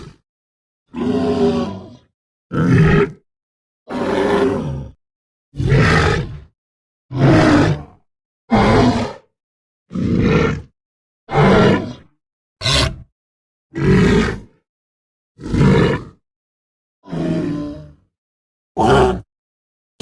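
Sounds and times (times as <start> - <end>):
deep growling creature calls: 3.9 - 5.0, 5.6 - 6.5, 7.1 - 9.3, 11.3 - 13.1, 15.4 - 16.2, 17.0 - 18.1, 18.8 - 19.3.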